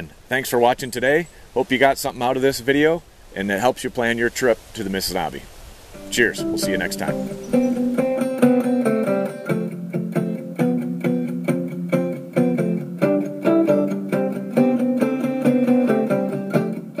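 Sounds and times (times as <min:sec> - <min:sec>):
guitar picking notes and chords: 0:06.0 - 0:17.0.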